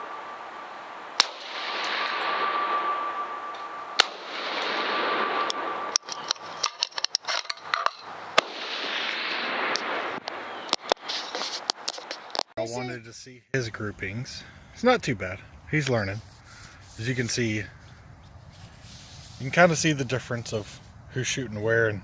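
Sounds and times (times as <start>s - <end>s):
rushing noise: 0.0s - 6.7s
rifle shots cracking: 1.2s - 7.8s, 8.4s - 11.0s
small clicks and knocks: 5.5s - 8.1s.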